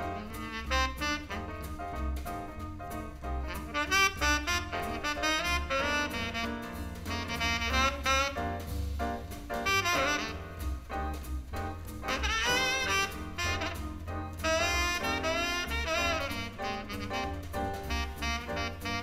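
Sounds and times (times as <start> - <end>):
saxophone solo: 0.0 - 1.7, 3.5 - 8.6, 9.6 - 10.7, 12.1 - 19.0
jazz drums: 0.0 - 19.0
walking bass line: 0.0 - 19.0.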